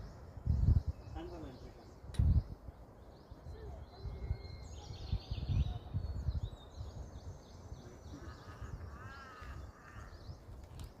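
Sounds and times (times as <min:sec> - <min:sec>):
small birds chirping: 0:00.0 - 0:11.0
wind rumble on microphone: 0:00.0 - 0:11.0
crow-like caws: 0:08.2 - 0:10.3.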